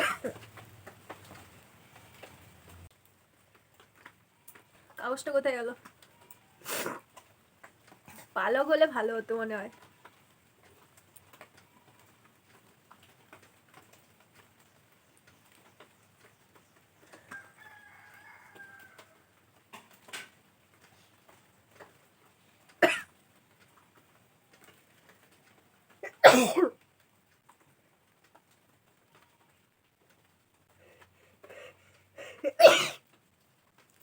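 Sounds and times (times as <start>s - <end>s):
woman sneezing: 32.4s - 33.0s.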